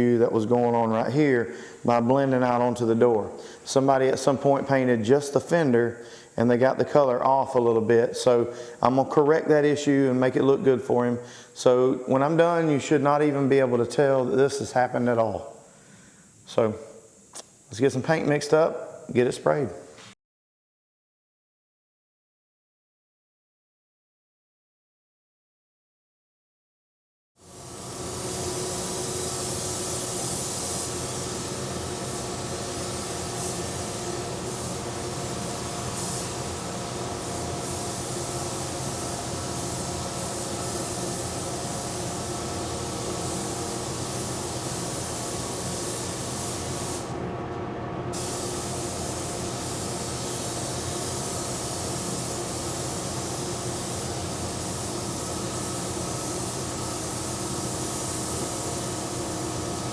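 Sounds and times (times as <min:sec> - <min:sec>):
spray gun air hiss: 0:00.6 - 0:04.4, 0:05.2 - 0:06.7, 0:08.2 - 0:09.0, 0:11.2 - 0:19.2, 0:27.4 - 0:47.3, 0:48.1 - 0:59.9.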